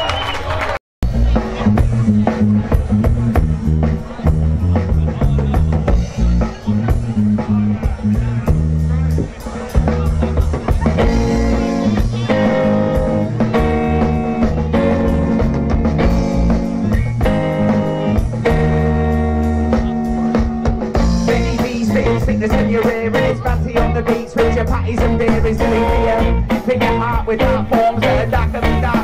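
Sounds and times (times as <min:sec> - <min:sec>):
drums: 0:00.0 - 0:29.0
guitar chords: 0:09.9 - 0:29.0.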